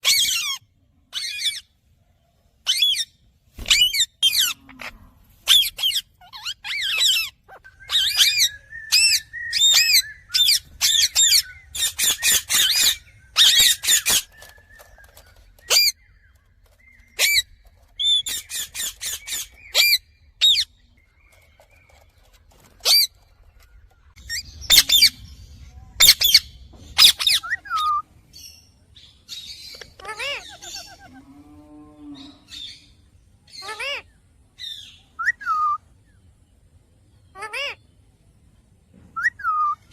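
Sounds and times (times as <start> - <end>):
parakeet squawking: 2.7 - 14.3, 24.3 - 25.1, 27.0 - 28.0, 29.7 - 31.2, 37.4 - 37.8.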